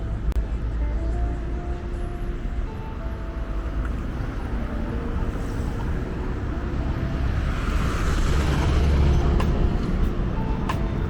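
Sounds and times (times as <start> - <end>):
road traffic rumble: 0.0 - 11.0
vehicle passing close by: 3.4 - 11.0.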